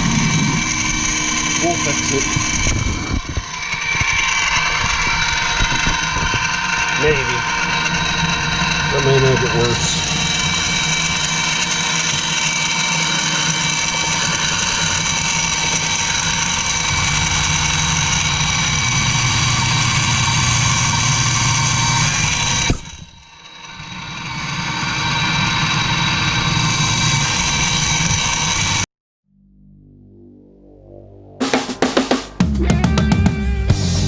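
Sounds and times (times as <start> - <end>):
electric drill whining: 0.0 - 28.8.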